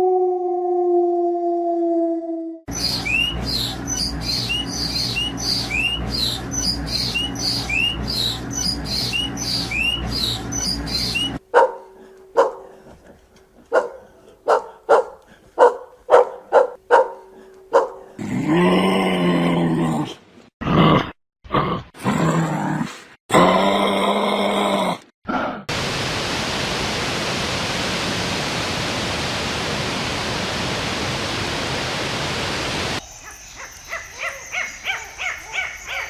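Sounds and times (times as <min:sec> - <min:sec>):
short rising chirps: 0:02.7 - 0:11.4
dog barking: 0:11.5 - 0:12.8, 0:13.7 - 0:18.2, 0:33.6 - 0:36.0.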